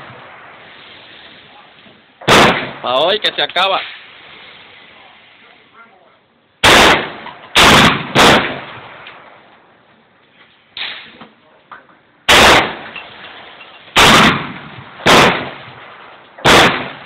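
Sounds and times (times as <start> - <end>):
rifle shots echoing: 2.2 - 3.2, 6.6 - 9.5, 12.3 - 13.4, 14.0 - 17.0.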